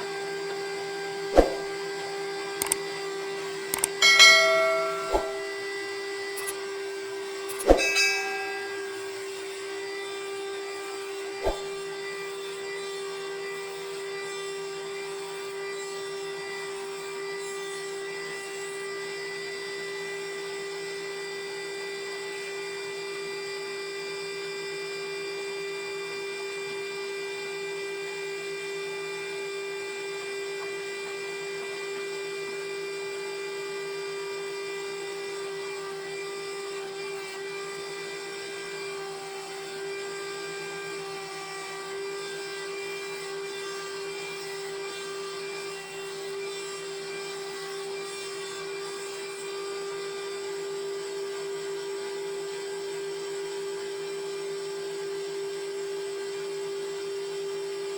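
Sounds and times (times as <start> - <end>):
ringing metallic clang: 3.8 - 5.7, 7.5 - 9.3.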